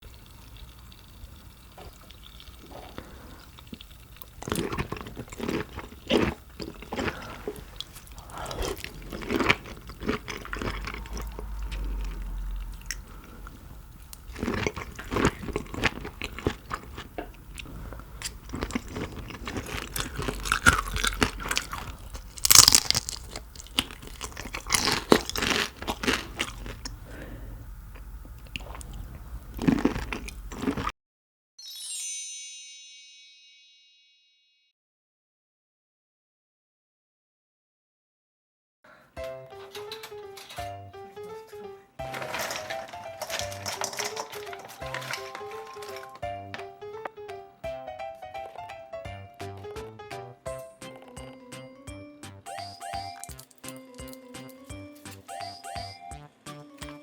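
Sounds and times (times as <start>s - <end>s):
chewing: 0.1s - 30.9s, 42.1s - 46.2s, 50.8s - 51.5s, 52.5s - 55.6s
crunching bites of shrimp: 1.9s - 27.4s, 28.0s - 30.9s, 53.0s - 55.3s.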